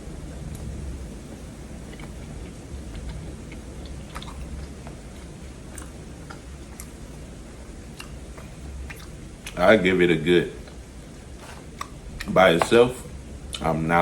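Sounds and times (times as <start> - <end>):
steady low hum: 0.0 - 14.0
quiet chewing: 1.3 - 9.9, 10.5 - 13.8
mouth clicks and smacks: 1.9 - 7.2, 7.8 - 9.6, 10.6 - 13.7.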